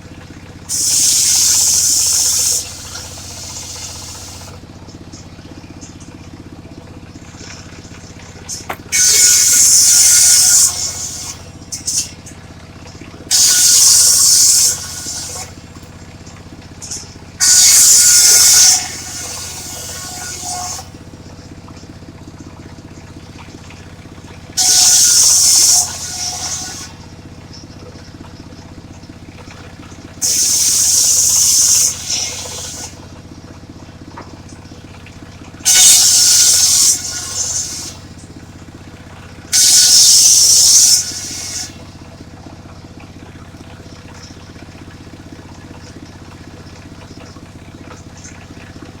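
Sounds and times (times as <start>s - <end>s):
circular saw cutting log: 0.7s - 4.6s, 7.3s - 12.3s, 13.2s - 21.2s, 24.4s - 27.2s, 30.2s - 33.1s, 35.6s - 38.6s, 39.5s - 42.0s.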